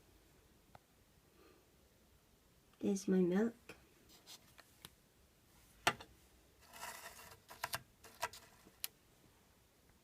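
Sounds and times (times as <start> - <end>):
soft rustle: 3.8 - 9.4.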